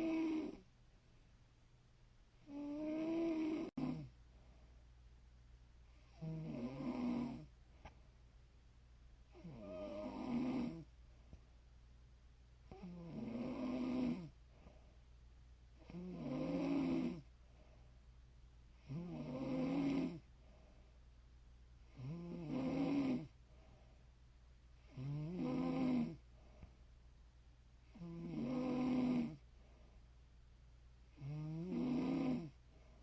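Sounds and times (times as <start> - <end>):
woman snoring: 0.0 - 0.6, 2.4 - 4.1, 6.0 - 7.5, 9.3 - 10.9, 12.7 - 14.4, 15.8 - 17.3, 18.8 - 20.2, 21.9 - 23.4, 24.9 - 26.2, 27.9 - 29.4, 31.1 - 32.6.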